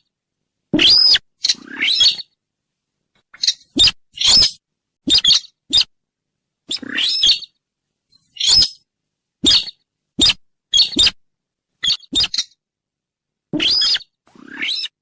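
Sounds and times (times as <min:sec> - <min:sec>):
harsh bird calls: 0:00.8 - 0:02.3, 0:03.4 - 0:05.9, 0:06.7 - 0:07.6, 0:13.6 - 0:15.0.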